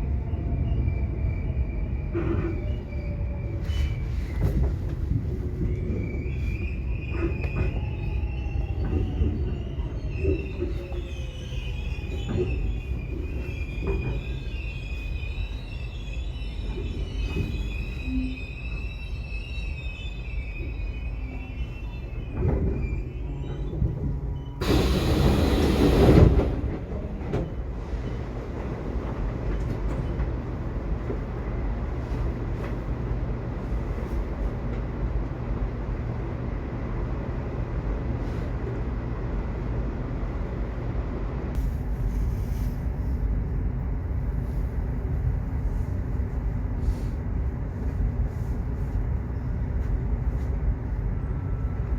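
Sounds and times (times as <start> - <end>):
train wheels squealing: 0.0 - 32.9, 46.7 - 51.9
subway train rumbling: 0.0 - 51.9.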